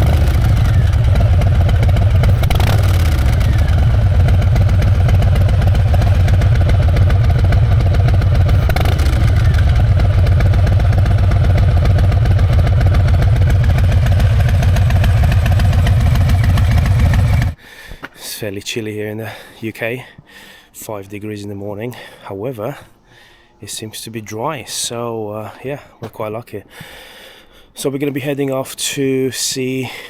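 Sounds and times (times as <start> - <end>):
motorcycle engine idling: 0.0 - 17.6.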